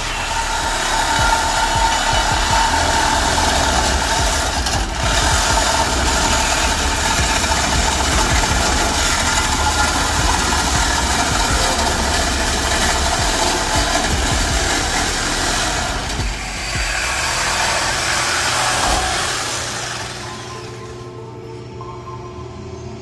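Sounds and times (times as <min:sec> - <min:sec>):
car engine idling: 0:00.0 - 0:18.0.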